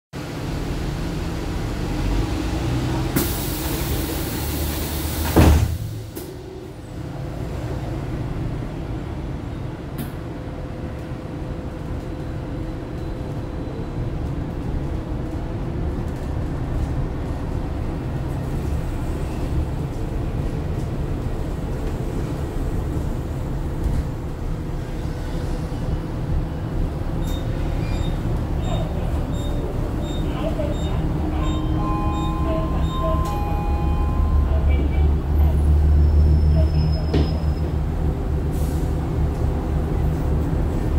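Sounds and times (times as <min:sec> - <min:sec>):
bus engine rumble: 0:00.2 - 0:40.9
bus door thump: 0:04.8 - 0:06.4.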